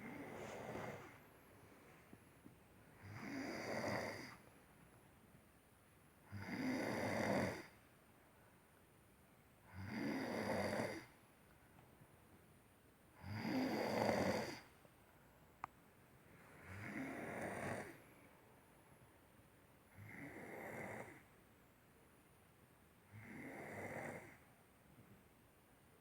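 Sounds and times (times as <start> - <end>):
person snoring: 3.0 - 4.4, 16.6 - 18.0.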